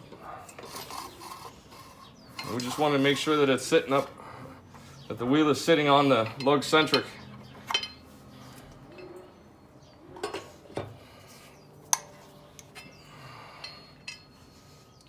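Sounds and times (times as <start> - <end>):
wrench clinking on lug nuts: 11.9 - 14.5.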